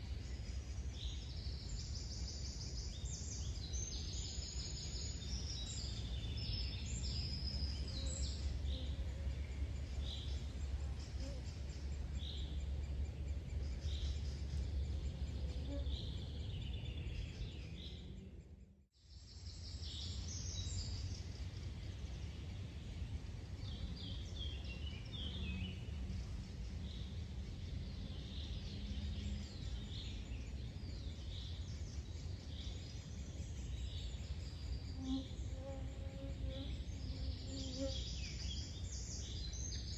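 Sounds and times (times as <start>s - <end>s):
songbirds singing: 0.0s - 39.9s
steady low rumble: 5.2s - 18.8s, 20.0s - 34.9s.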